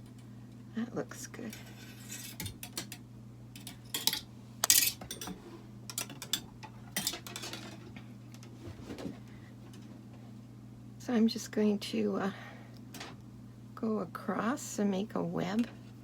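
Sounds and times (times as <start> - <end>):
wire clinking and scraping: 1.4 - 8.0.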